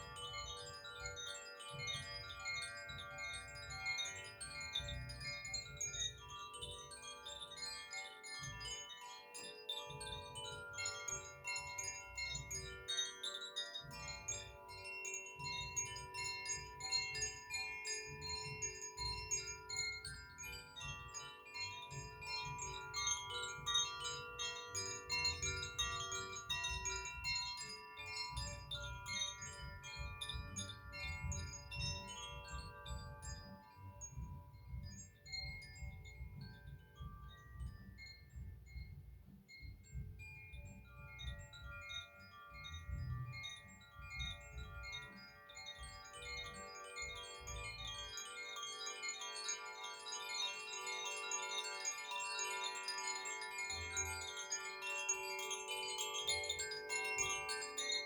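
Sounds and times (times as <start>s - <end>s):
chimes tinkling: 0.0s - 58.0s.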